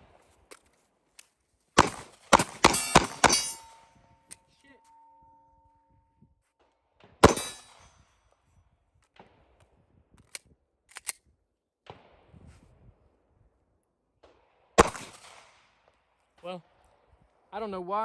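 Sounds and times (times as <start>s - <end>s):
pistol shot with echo: 1.8s - 3.8s, 7.2s - 7.9s, 14.8s - 15.6s
gun handling clicks: 10.2s - 11.3s.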